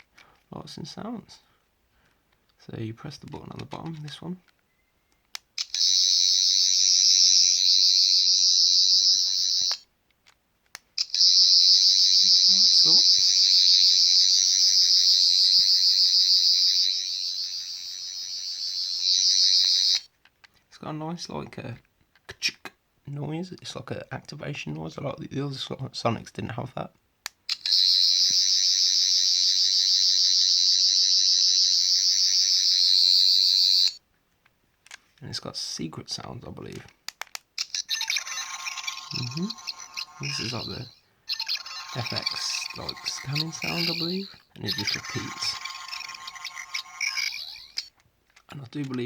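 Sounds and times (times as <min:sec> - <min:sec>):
sharp clicks: 0:03.2 - 0:06.0, 0:27.2 - 0:28.4, 0:36.6 - 0:49.0
toy high-pitched warbling buzz: 0:05.6 - 0:09.9, 0:11.0 - 0:20.1, 0:27.5 - 0:34.0, 0:37.6 - 0:48.0.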